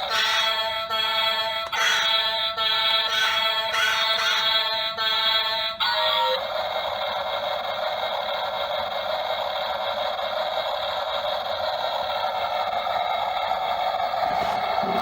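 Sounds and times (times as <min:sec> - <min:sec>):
excavator running: 0:00.0 - 0:15.0.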